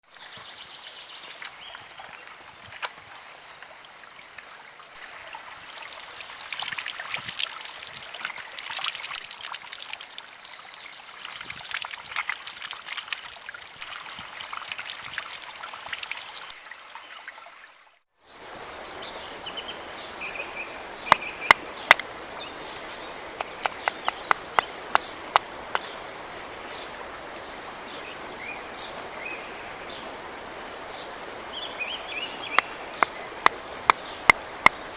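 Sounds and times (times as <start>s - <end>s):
sharp knocks: 22.7s - 25.0s
birds chirping: 22.7s - 26.8s
small crackles: 22.7s - 26.8s.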